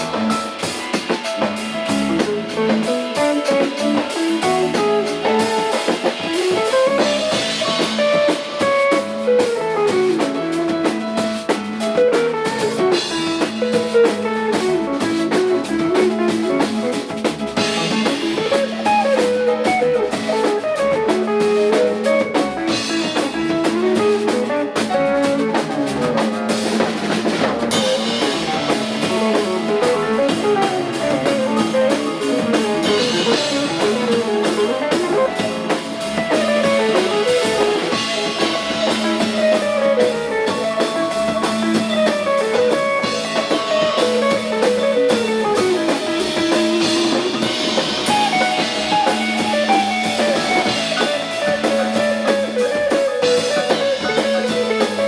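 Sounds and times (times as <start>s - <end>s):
drum kit beat: 0.0s - 55.0s
guitar melody: 0.0s - 55.0s.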